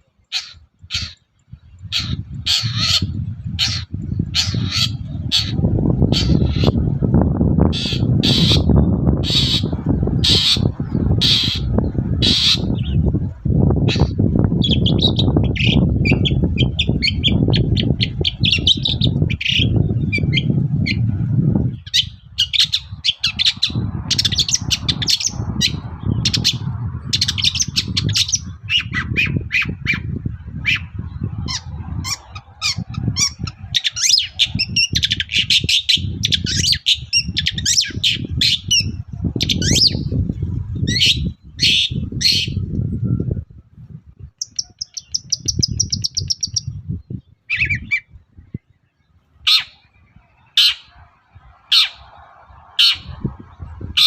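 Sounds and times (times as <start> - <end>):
low rumbling noise: 1.6 - 23.0, 23.6 - 33.7.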